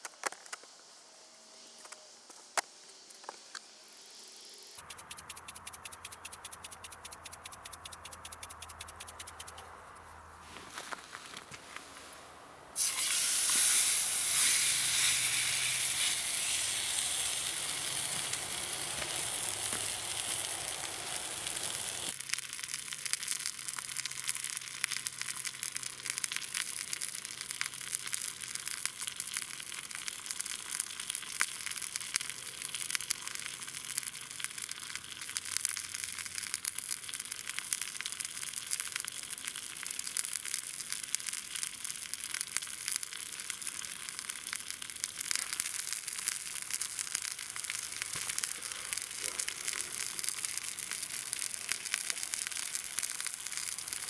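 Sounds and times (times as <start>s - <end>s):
food sizzling in a hot pan: 12.8s - 54.0s.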